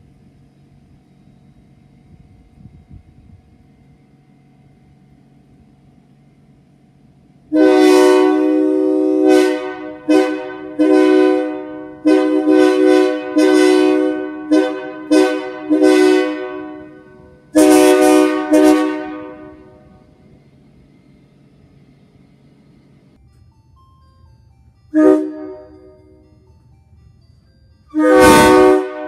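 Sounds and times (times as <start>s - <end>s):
locomotive air horn blasts: 7.5s - 20.2s, 24.9s - 26.0s, 27.9s - 29.0s.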